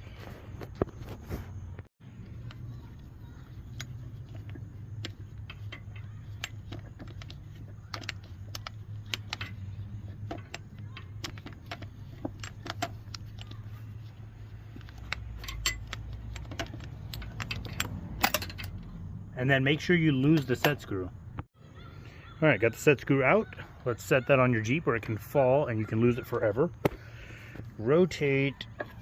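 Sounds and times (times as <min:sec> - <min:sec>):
allen wrench metallic clicks: 0:03.4 - 0:18.9.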